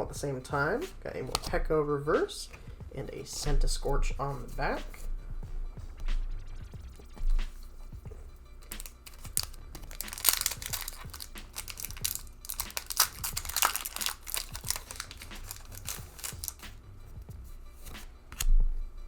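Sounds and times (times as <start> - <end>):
foil wrapper crinkling: 8.6 - 16.7.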